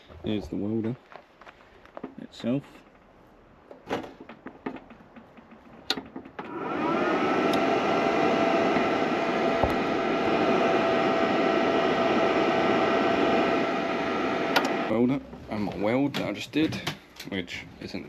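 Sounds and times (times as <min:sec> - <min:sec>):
welder cooling fan humming: 0:06.4 - 0:15.2
clicks: 0:14.5 - 0:14.8.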